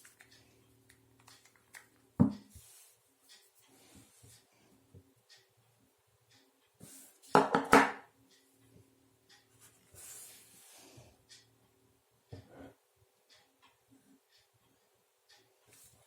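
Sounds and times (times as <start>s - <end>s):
knocks and clatter on hard surface: 7.3s - 8.0s.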